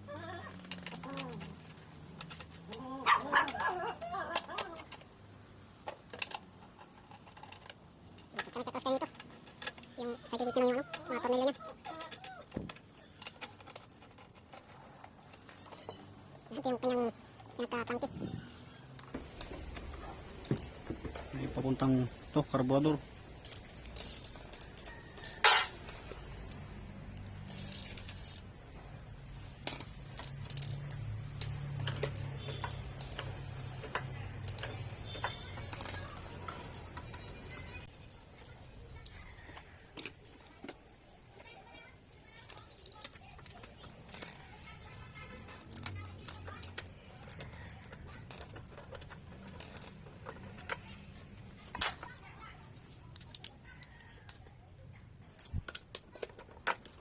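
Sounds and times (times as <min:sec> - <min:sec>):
clinks of hand tools and metal parts: 0:00.0 - 0:57.0
hissy scrape: 0:18.1 - 0:38.6
metallic clicks of hand tools: 0:29.6 - 0:39.2.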